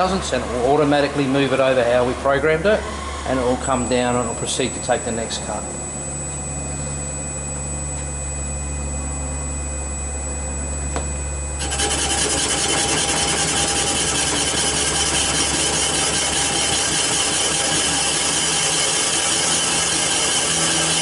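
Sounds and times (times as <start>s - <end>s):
machine hum and high whine: 0.0s - 21.0s
rasping of metal being cut: 11.6s - 21.0s.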